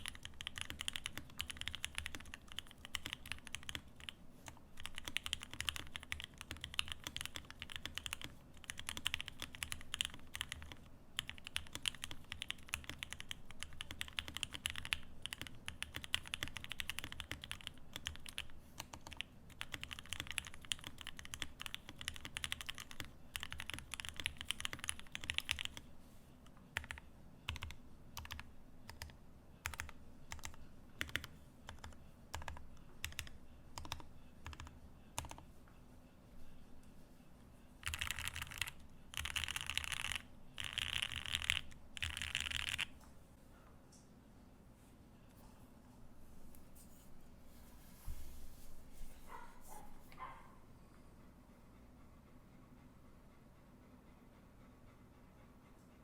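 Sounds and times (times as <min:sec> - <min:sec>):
mechanical keyboard typing: 0:00.0 - 0:25.8, 0:26.8 - 0:35.4, 0:37.8 - 0:42.9.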